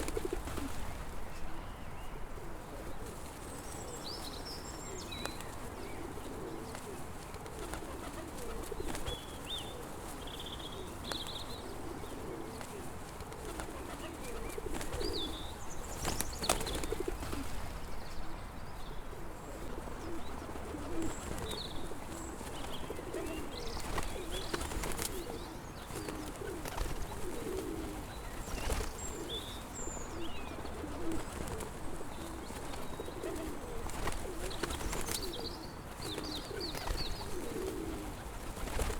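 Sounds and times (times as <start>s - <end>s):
pigeons cooing: 2.4s - 17.7s, 19.1s - 38.9s
small birds chirping: 3.0s - 38.9s.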